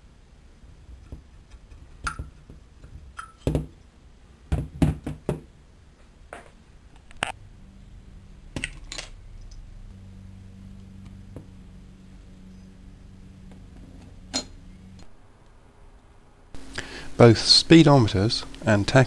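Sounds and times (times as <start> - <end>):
faint low hum: 0.0 - 19.0.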